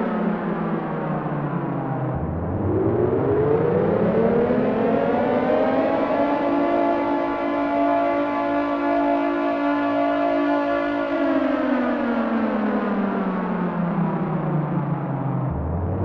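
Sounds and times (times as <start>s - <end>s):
air raid siren wailing: 0.0s - 16.0s.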